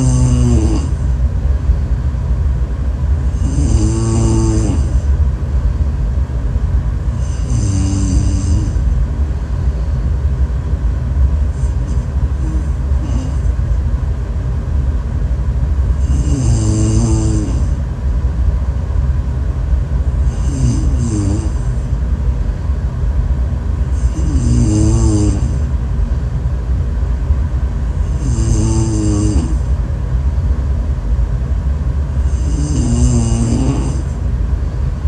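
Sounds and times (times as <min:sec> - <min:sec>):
loud rattling snoring: 0:00.0 - 0:01.1, 0:03.2 - 0:05.1, 0:07.2 - 0:09.0, 0:11.5 - 0:13.6, 0:15.9 - 0:17.8, 0:20.2 - 0:21.9, 0:23.9 - 0:25.7, 0:28.0 - 0:29.7, 0:32.1 - 0:34.2.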